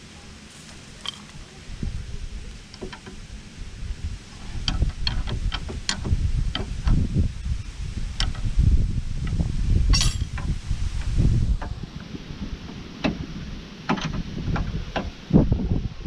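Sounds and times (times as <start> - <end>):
wind rumbling on microphone: 0.0 - 16.0
metal tools clinking: 1.0 - 1.3, 9.9 - 10.4.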